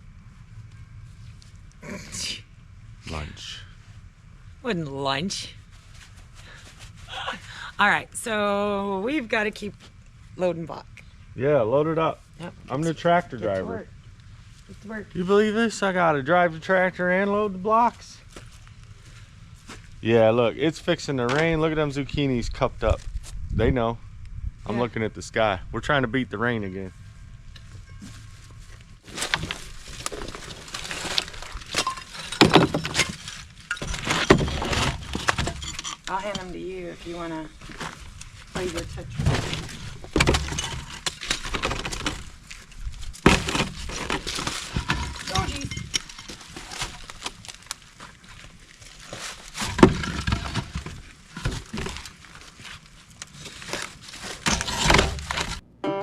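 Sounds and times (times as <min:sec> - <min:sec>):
concrete blocks clinking together: 0:31.0 - 0:36.5, 0:43.3 - 0:46.7, 0:49.6 - 0:52.0.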